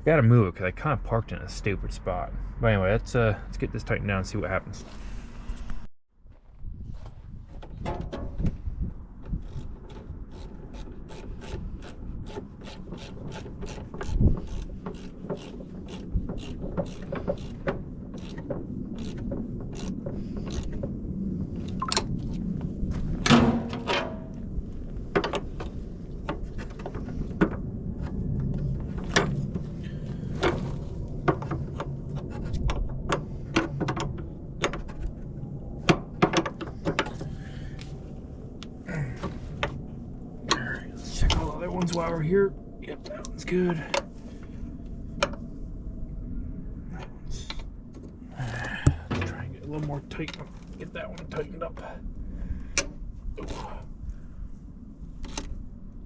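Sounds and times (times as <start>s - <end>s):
ratchet wrench clicking: 9.4s - 17.6s
metal knocks: 23.2s - 24.4s.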